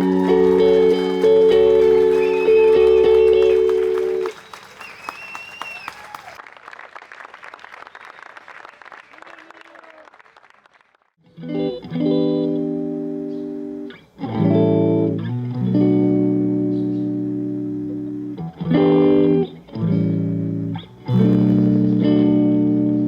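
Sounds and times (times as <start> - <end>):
electric guitar chords: 0.0 - 4.3, 11.3 - 23.0
audience applause: 0.0 - 11.2.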